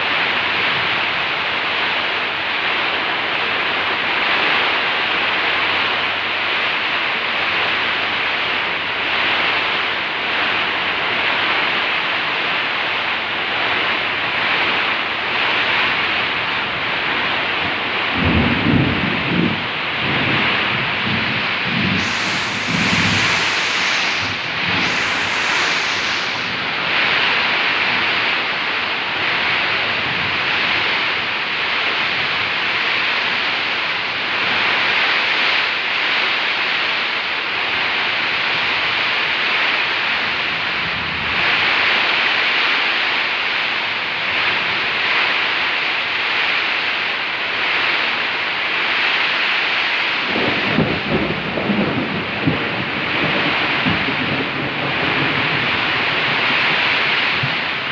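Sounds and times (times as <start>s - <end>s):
heavy rain pouring: 0.0s - 57.9s
low rumble: 22.0s - 27.0s.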